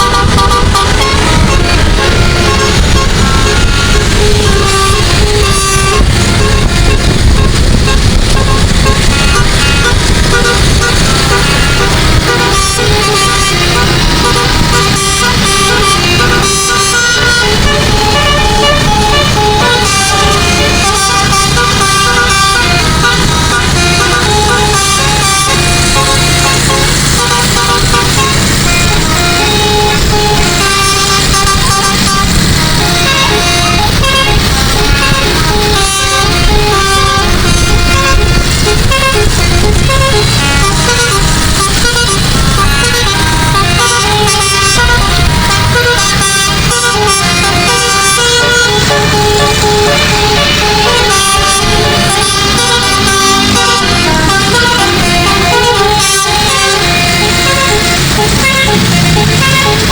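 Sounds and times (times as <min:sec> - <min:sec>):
low rumble: 0:00.0 - 0:46.2
musical bus air horn tune: 0:00.0 - 0:59.9.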